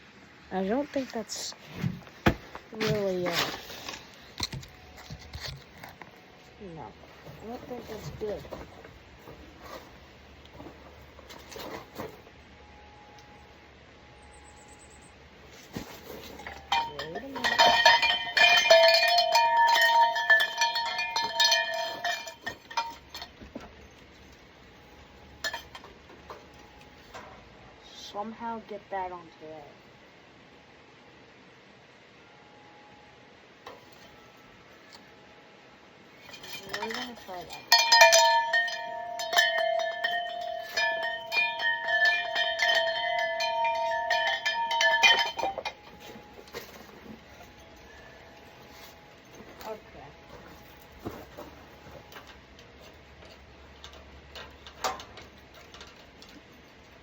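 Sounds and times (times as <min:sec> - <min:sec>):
metal tools clinking and ringing: 0:15.8 - 0:24.3, 0:24.9 - 0:27.4, 0:36.1 - 0:57.0.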